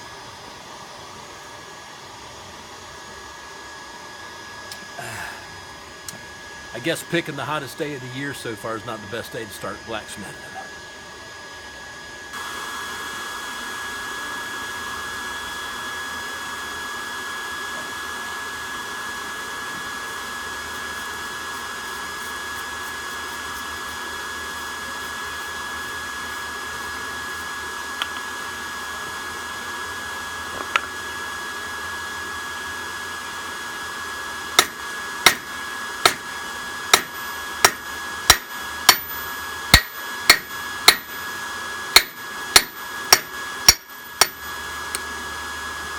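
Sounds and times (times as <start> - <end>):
electric blower whine: 0.0 - 45.9
hammer striking anvil: 34.6 - 35.5, 36.1 - 36.3, 36.9 - 41.1, 42.0 - 44.4.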